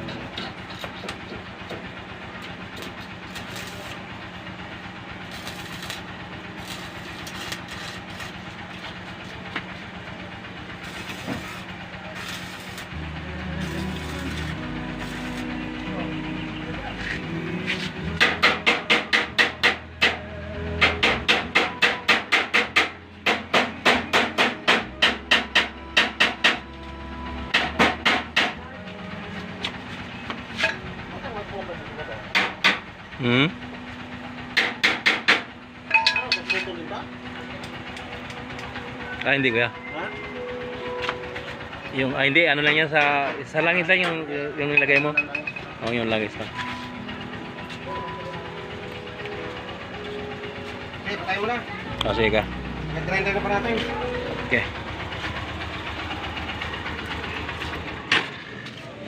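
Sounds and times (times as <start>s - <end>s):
constant low hum: 0.0s - 59.0s
arc welding crackling sizzle: 2.4s - 16.0s
hammer striking metal: 18.2s - 26.7s, 27.5s - 28.6s, 32.3s - 32.9s, 34.5s - 36.8s, 44.8s - 45.9s.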